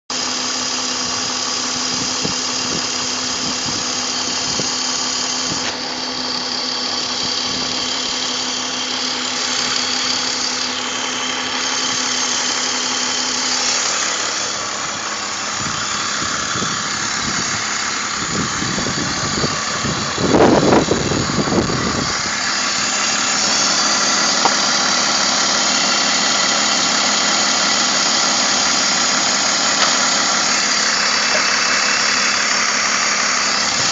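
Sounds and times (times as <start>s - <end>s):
car engine idling with hiss: 0.1s - 33.9s
rough engine rumble: 0.1s - 33.9s.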